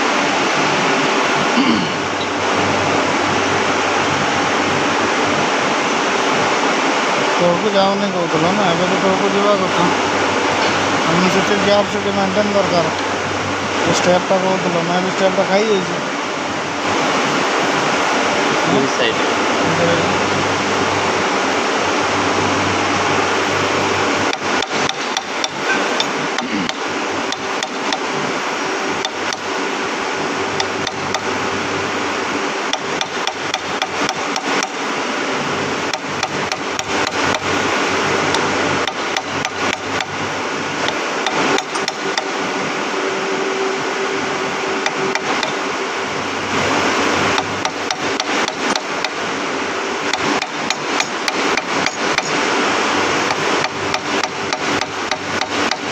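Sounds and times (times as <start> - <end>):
machine hum: 0.0 - 55.9
hammer tapping on metal: 24.3 - 28.0, 40.9 - 42.3, 50.1 - 52.4.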